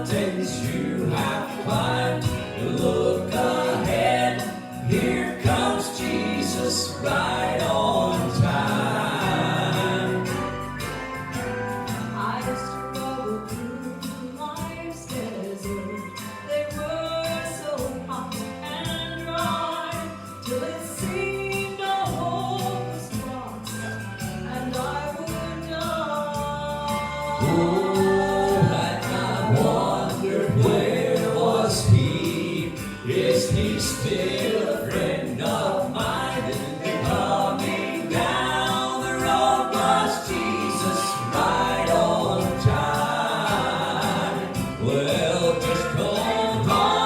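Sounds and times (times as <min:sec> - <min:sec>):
trio singing in harmony: 0:00.0 - 0:14.2, 0:26.9 - 0:47.0
musical accompaniment: 0:00.0 - 0:47.0.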